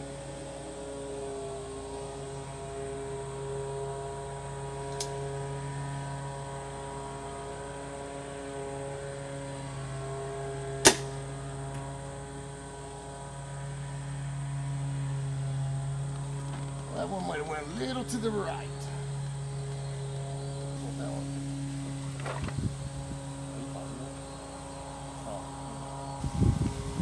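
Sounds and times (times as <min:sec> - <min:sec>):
steady low hum: 0:00.0 - 0:27.0
crossbow firing crack: 0:10.8 - 0:11.5.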